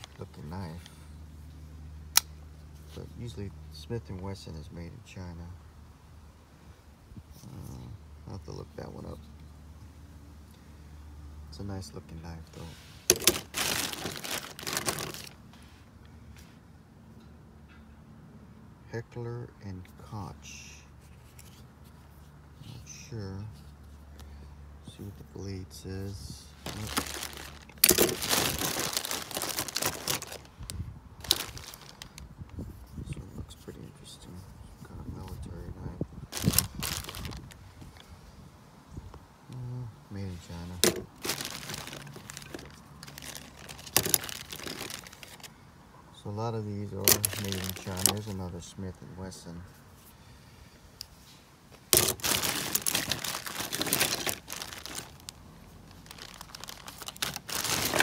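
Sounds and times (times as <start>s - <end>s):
wrapping crinkling and rustling: 0.0s - 0.6s, 12.5s - 15.6s, 26.5s - 32.2s, 36.3s - 37.6s, 40.8s - 45.5s, 46.8s - 48.5s, 51.9s - 58.0s.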